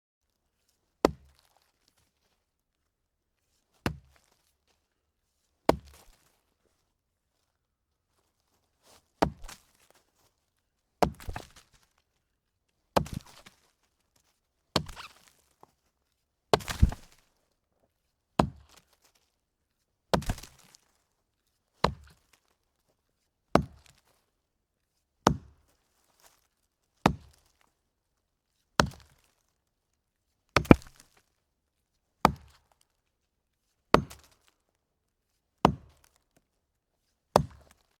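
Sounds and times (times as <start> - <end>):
axe chopping log: 1.0 - 1.4, 3.9 - 4.1, 5.7 - 6.1, 9.2 - 9.6, 11.0 - 11.6, 13.0 - 13.5, 14.8 - 15.1, 16.5 - 17.2, 18.4 - 18.8, 20.1 - 20.7, 21.8 - 22.2, 23.6 - 24.0, 25.3 - 25.5, 27.0 - 27.4, 30.6 - 31.0, 32.2 - 32.6, 33.9 - 34.4, 35.6 - 36.1, 37.4 - 37.8.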